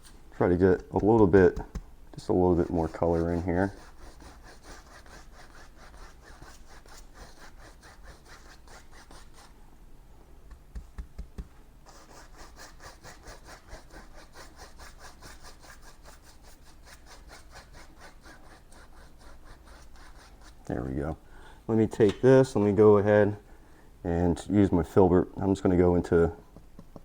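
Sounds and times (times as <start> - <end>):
brush scrubbing paint on canvas: 0.0 - 9.6, 11.9 - 20.9.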